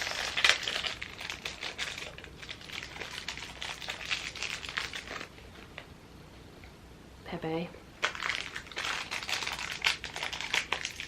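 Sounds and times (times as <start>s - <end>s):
packaging crinkling and clicking: 0.0s - 5.9s, 8.0s - 11.0s.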